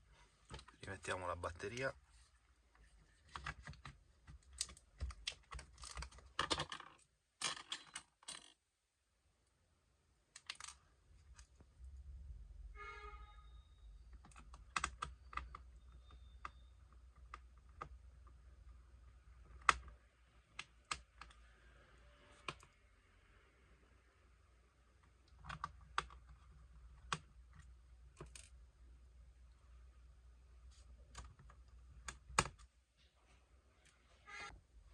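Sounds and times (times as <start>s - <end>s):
brief squeak: 12.8s - 14.0s.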